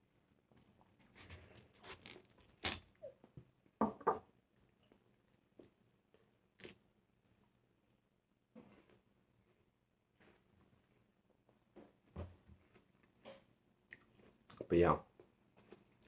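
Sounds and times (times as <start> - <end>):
watermelon crunching: 1.0 - 3.0, 6.5 - 7.5.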